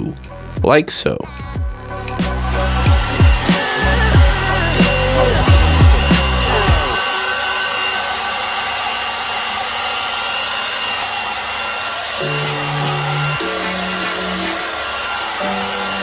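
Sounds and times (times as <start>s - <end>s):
background music with low notes: 0.0s - 8.9s, 12.2s - 16.0s
hairdryer blowing: 2.0s - 16.0s.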